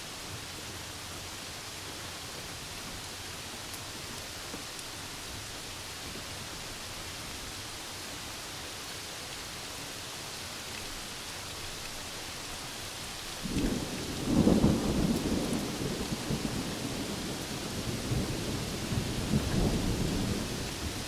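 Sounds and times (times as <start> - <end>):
heavy rain: 0.0 - 21.0
rolling thunder: 13.4 - 21.0.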